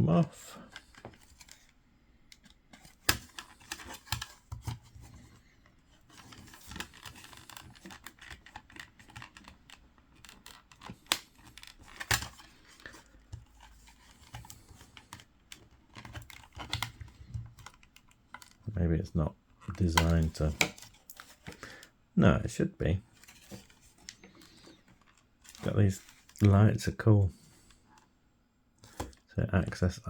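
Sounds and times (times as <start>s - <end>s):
hands scraping plastic casing: 0.6s - 18.7s, 19.6s - 21.8s.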